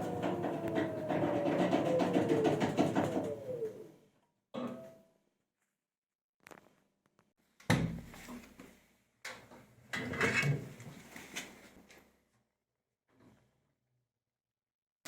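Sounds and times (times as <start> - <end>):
washing machine knocking and rattling: 0.0 - 3.8.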